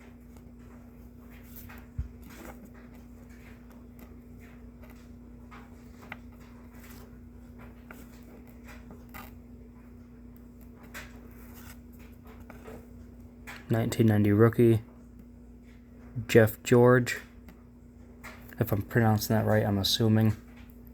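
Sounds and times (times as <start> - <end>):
steady low hum: 0.0 - 20.9
trading cards sliding and ticking: 0.1 - 14.4.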